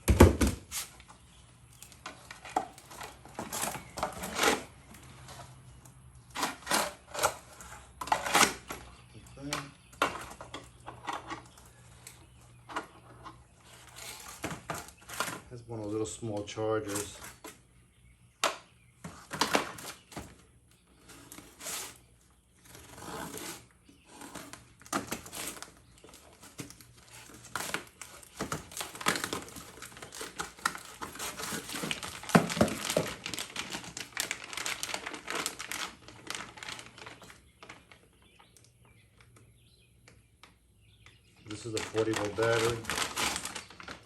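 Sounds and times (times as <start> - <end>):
packaging crinkling and tearing: 22.6 - 38.2, 41.5 - 44.0.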